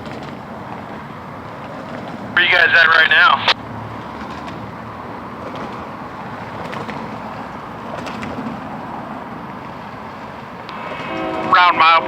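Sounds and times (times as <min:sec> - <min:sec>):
road traffic rumble: 0:00.0 - 0:12.0.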